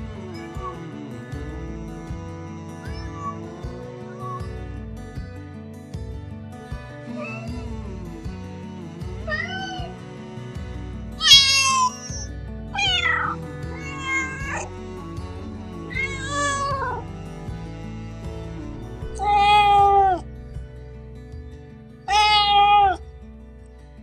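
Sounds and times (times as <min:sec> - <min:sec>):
background music: 0:00.0 - 0:24.0
cat meowing: 0:02.9 - 0:03.5, 0:04.1 - 0:04.4, 0:07.2 - 0:07.5, 0:09.3 - 0:09.9, 0:11.2 - 0:14.7, 0:15.9 - 0:17.0, 0:19.0 - 0:20.2, 0:22.1 - 0:23.0.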